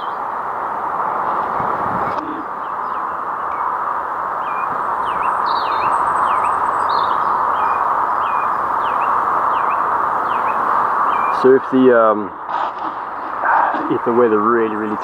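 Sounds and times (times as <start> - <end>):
storm wind through trees: 0.0 - 15.0
small bird chirping: 4.4 - 11.5.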